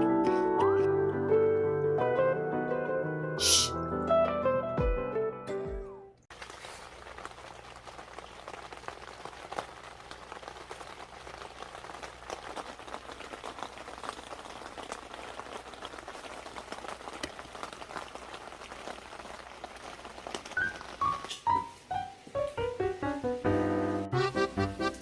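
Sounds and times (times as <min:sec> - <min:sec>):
raindrops striking close by: 0:06.3 - 0:25.0
steady rain hiss: 0:06.3 - 0:25.0.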